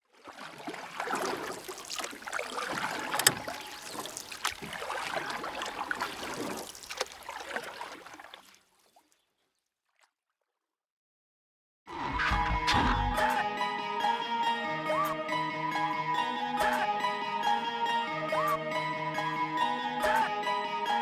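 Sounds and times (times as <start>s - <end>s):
water splashing around boat: 0.0s - 10.2s.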